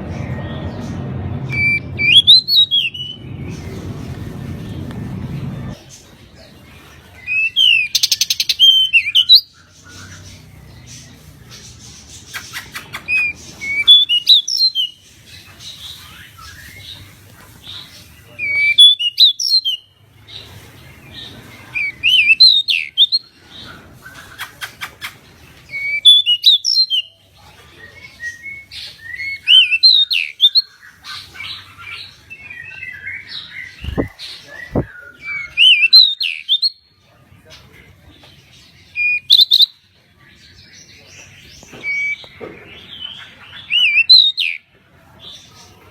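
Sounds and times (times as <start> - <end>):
bird whistled song phrases: 1.5 - 3.3, 25.7 - 27.1, 39.0 - 39.8
low thumps: 33.8 - 34.9.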